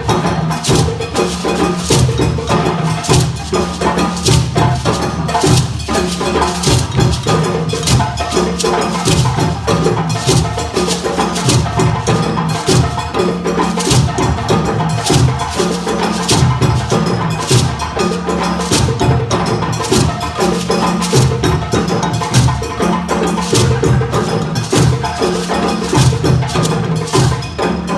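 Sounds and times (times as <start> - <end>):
hand drums playing rhythm: 0.0 - 27.9.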